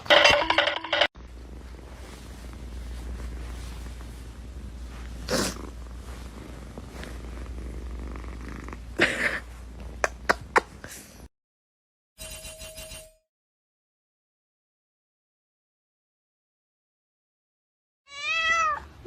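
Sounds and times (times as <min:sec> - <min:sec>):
cat purring: 0:01.4 - 0:10.1.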